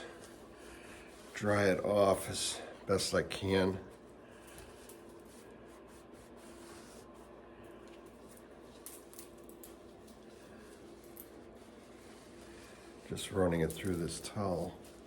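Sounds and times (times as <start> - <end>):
cloth rubbing bicycle chain: 8.1 - 15.0.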